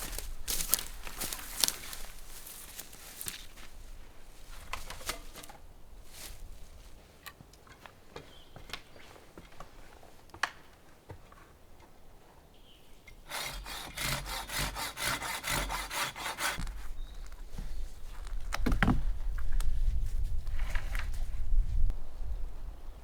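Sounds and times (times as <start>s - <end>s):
hand saw cutting wood: 13.2s - 16.8s.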